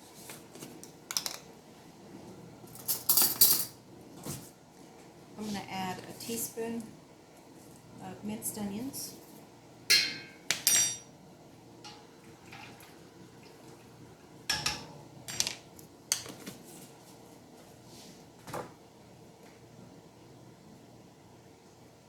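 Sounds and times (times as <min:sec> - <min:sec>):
metal utensils clinking on pot: 0:09.9 - 0:11.1, 0:14.5 - 0:15.5.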